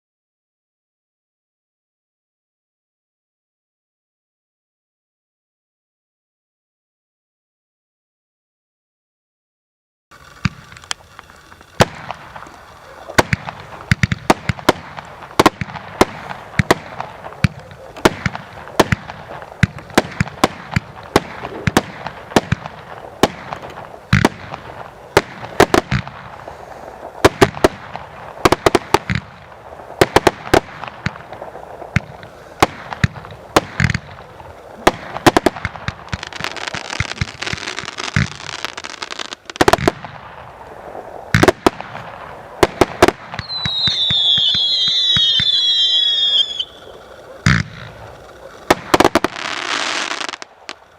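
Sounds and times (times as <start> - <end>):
firework crackling: 10.1 - 50.9
whistling fireworks: 10.2 - 50.9.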